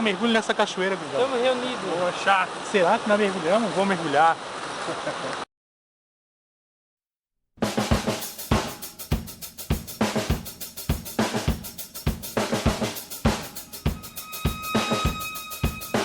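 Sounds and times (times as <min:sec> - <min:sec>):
drum kit playing steady beat: 0:07.6 - 0:16.0.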